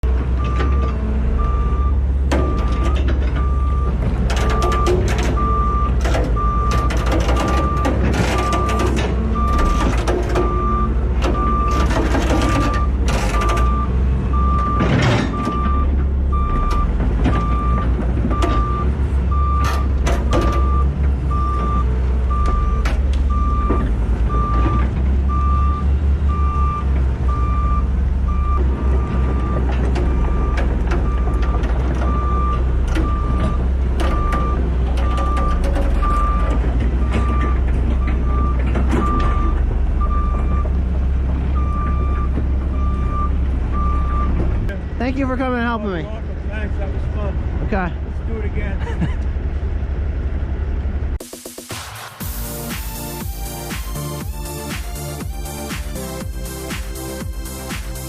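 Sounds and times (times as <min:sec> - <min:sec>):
heavy engine rumble: 0:00.0 - 0:58.0
truck reversing alarm beeping: 0:00.4 - 0:45.8, 0:51.7 - 0:58.0
rattling and clatter: 0:02.2 - 0:16.2, 0:28.6 - 0:42.8.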